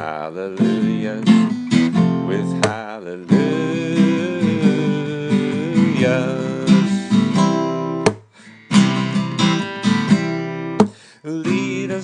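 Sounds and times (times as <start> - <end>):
person singing: 0.0 - 7.6, 10.8 - 12.0
acoustic guitar strumming chords: 0.0 - 12.0.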